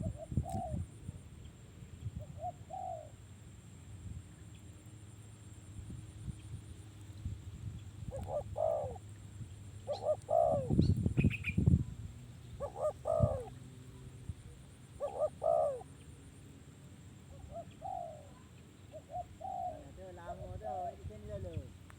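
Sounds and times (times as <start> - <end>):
dove cooing: 0.0 - 0.8, 2.2 - 3.2, 8.1 - 9.0, 9.8 - 11.3, 12.6 - 13.6, 15.0 - 16.0, 17.3 - 21.7.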